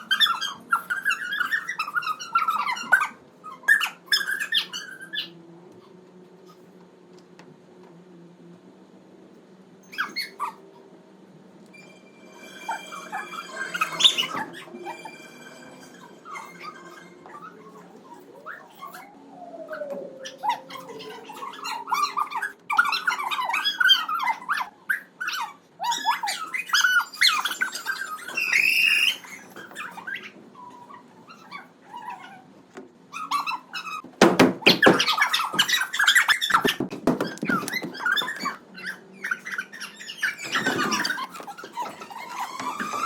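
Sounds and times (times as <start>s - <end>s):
dog whimpering and whining: 12.6s - 34.0s, 37.4s - 43.0s.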